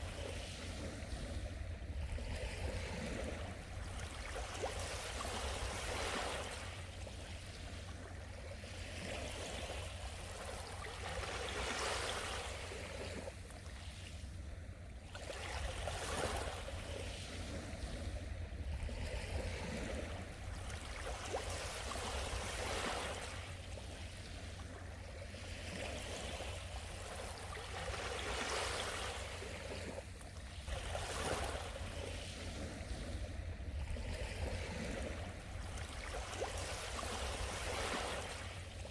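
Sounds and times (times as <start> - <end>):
sea waves washing onto shore: 15.2 - 38.9.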